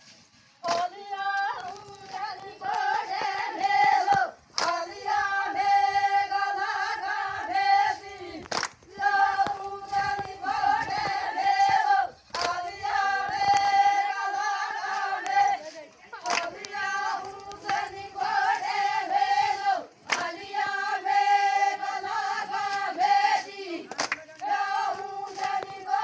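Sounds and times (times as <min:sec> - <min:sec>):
woman singing folk song: 0:00.6 - 0:19.5.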